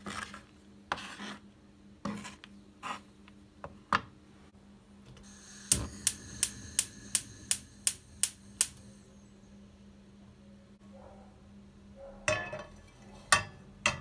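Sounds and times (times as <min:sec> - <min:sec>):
steady low hum: 0:05.3 - 0:10.7
sharp clicks: 0:05.7 - 0:08.8.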